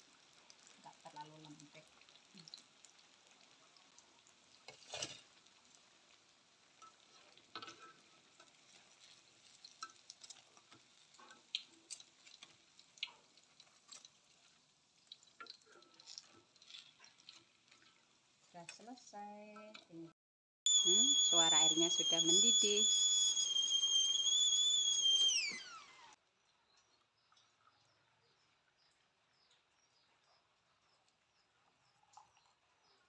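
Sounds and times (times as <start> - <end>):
fritters sizzling in oil: 0.0 - 20.0, 20.7 - 26.2
crackles and pops of frying: 0.0 - 33.0.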